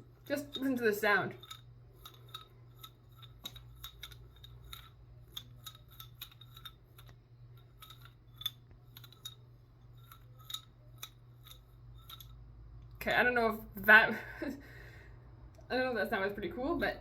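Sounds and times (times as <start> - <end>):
fidget toy clicking: 0.2 - 12.4.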